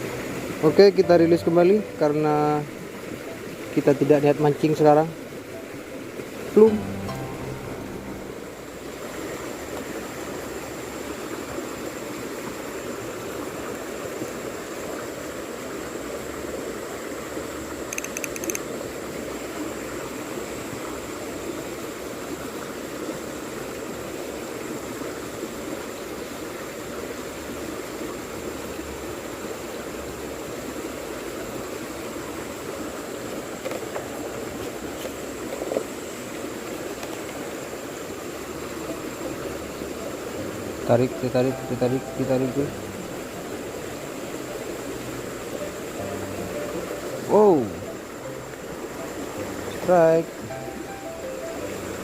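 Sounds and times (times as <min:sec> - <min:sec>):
stream water running: 0:00.0 - 0:52.0
high chirps: 0:05.5 - 0:08.8, 0:45.6 - 0:52.0.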